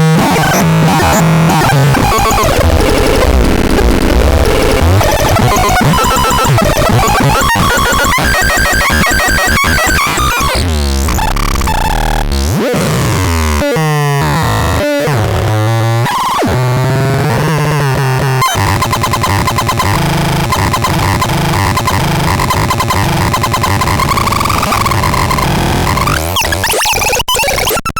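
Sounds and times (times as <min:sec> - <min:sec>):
buzzing synthesizer tones: 0:00.0 - 0:13.2
rapid synthesizer clicking: 0:00.0 - 0:15.1, 0:17.2 - 0:27.9.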